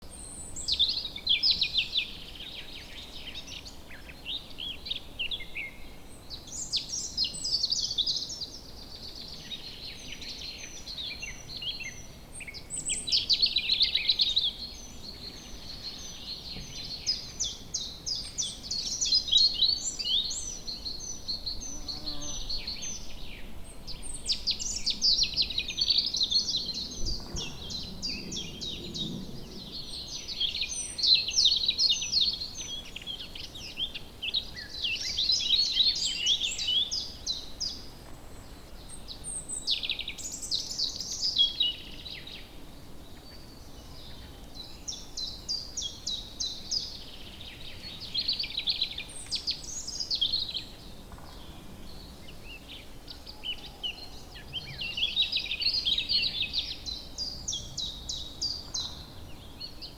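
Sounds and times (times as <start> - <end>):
birds chirping and trilling: 9.6 - 42.5.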